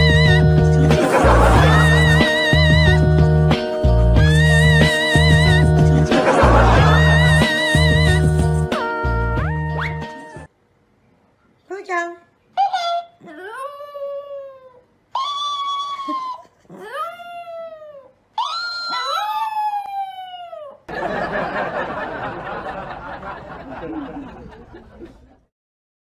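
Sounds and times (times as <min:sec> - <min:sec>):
animal howling: 0:13.2 - 0:20.8.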